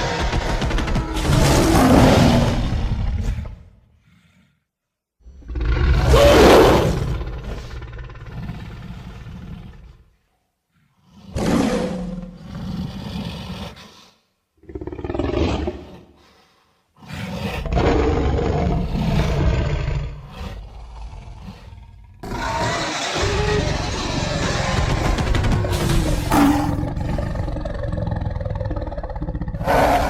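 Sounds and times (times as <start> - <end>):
monster roars: 0.0 - 3.7, 5.4 - 9.2, 17.4 - 30.0.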